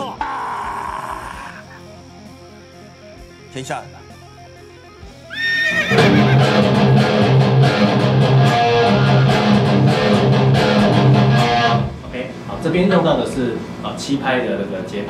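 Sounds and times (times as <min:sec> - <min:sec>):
electric guitar riff: 0:00.0 - 0:12.0.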